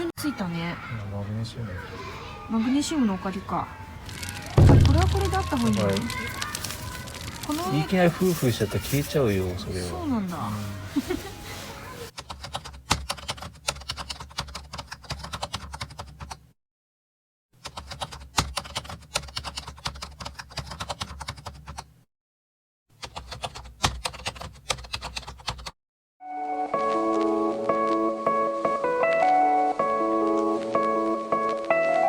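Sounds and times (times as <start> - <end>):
dry tinder crackling: 4.0 - 12.1, 26.8 - 32.0.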